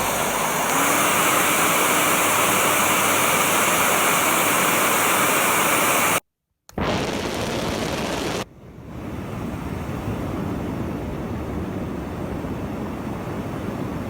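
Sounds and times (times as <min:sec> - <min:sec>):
hair dryer blowing: 0:00.0 - 0:06.2.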